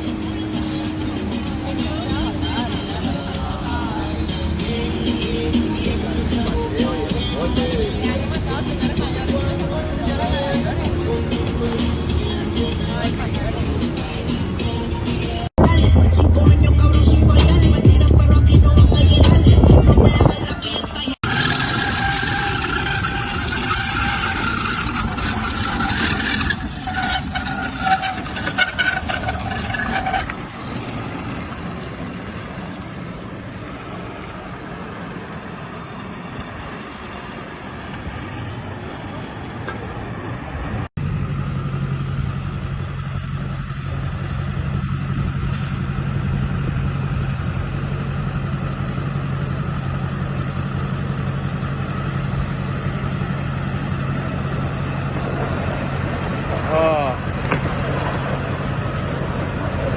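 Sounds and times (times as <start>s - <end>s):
boat engine running: 0.0s - 39.6s.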